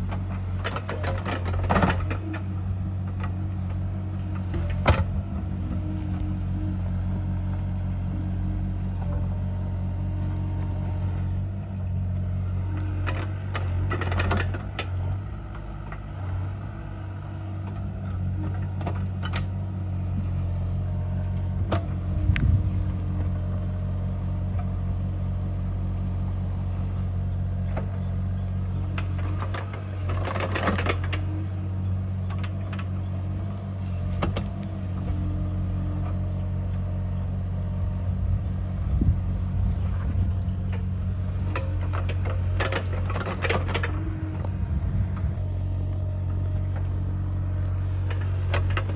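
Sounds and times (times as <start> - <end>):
machine clanks and rattles: 0.0 - 2.4, 12.7 - 15.2, 28.8 - 31.5, 39.7 - 44.6, 47.7 - 48.9
diesel engine running: 0.0 - 48.9.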